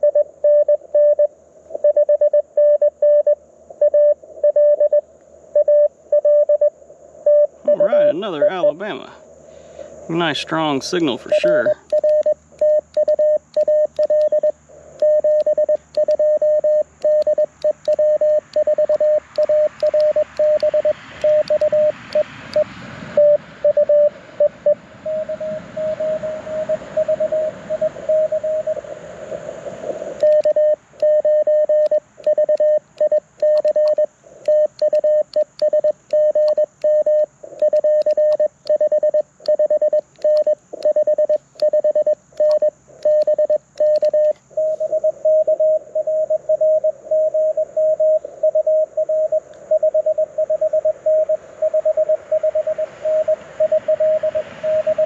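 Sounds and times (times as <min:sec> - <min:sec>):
radio band noise hiss: 0:07.0 - 0:11.9, 0:25.2 - 0:31.0
morse code tones: 0:07.3 - 0:09.1, 0:10.2 - 0:28.8, 0:30.2 - 0:55.0.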